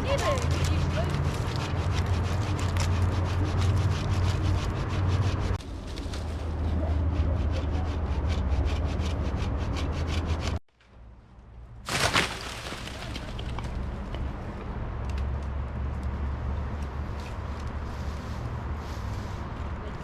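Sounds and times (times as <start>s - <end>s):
hand saw cutting wood: 0.1s - 5.6s, 6.4s - 10.6s.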